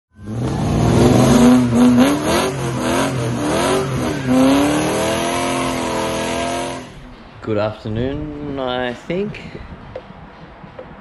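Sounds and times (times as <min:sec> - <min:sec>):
engine revving hard: 0:00.2 - 0:07.0.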